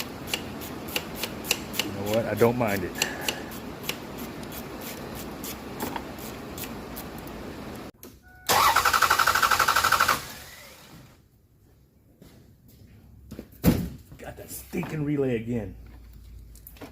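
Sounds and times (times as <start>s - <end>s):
engine cranking on starter motor: 8.5s - 11.2s.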